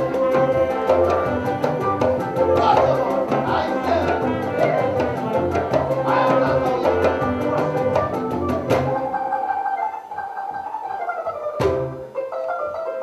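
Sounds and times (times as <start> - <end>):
fast percussion ticks: 0.0 - 9.0.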